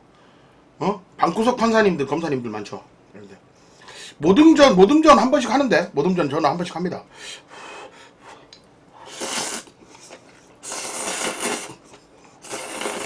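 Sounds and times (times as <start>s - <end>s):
person slurping noodles: 9.0s - 13.0s.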